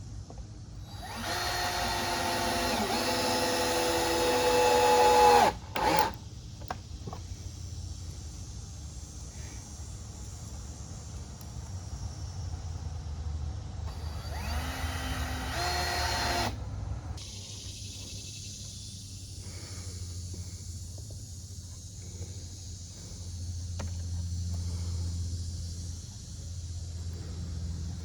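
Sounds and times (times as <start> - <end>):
steady low hum: 0.0 - 28.0
power drill driving a screw: 0.9 - 6.2, 13.9 - 16.6.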